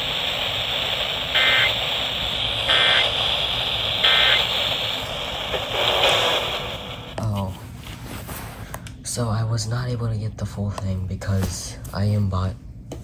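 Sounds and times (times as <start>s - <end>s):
radio static hiss: 0.0s - 7.6s
raspy two-tone data buzzes: 1.3s - 4.6s.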